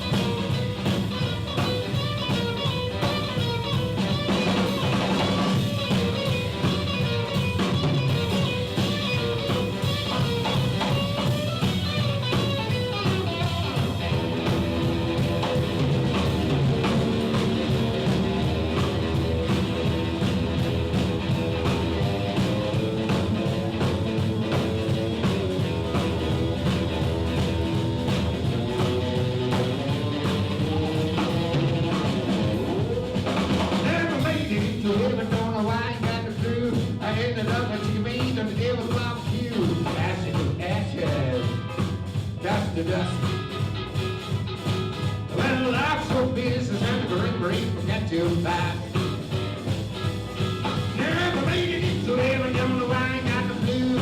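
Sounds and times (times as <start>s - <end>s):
bending guitar notes: 0.0s - 36.0s
blues band playing: 0.0s - 54.0s.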